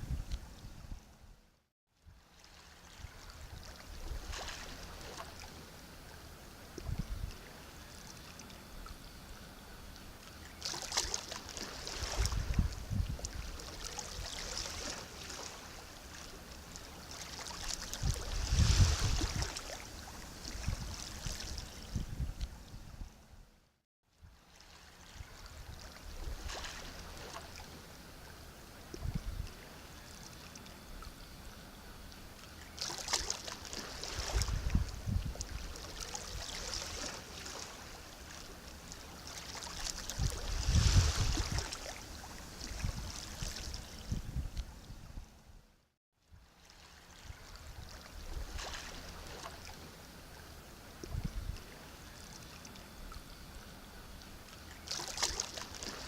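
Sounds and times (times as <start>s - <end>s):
sea waves washing: 10.6s - 21.8s, 35.5s - 44.0s
low thuds of waves: 10.8s - 16.4s, 17.0s - 23.3s, 33.1s - 37.9s, 39.3s - 45.5s, 51.0s - 51.7s.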